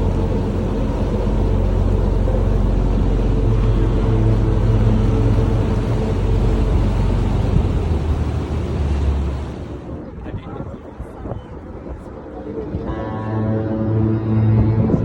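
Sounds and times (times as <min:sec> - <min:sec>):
boat engine humming: 0:00.0 - 0:10.3
water noise: 0:00.0 - 0:10.4
wind noise: 0:00.0 - 0:15.0.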